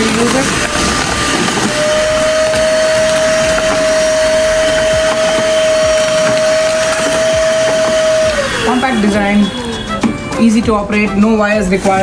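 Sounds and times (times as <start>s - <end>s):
vacuum cleaner airflow rushing: 0.0s - 9.2s
vacuum motor whine: 0.0s - 10.1s.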